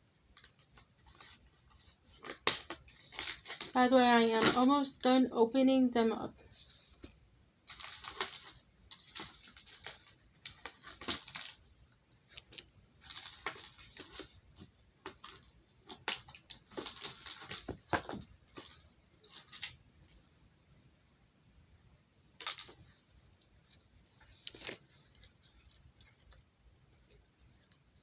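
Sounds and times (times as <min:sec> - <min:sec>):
plastic packaging crinkling: 0:07.7 - 0:11.7, 0:12.3 - 0:14.4, 0:15.0 - 0:19.8, 0:22.4 - 0:26.4.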